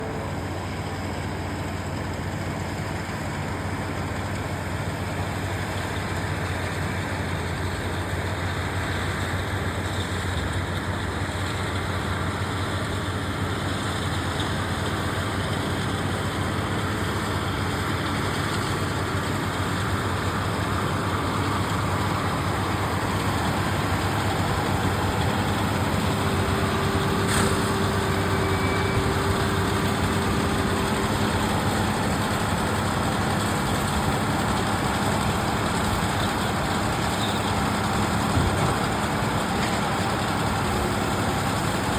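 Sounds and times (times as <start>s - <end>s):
tractor engine running: 0.0s - 41.9s.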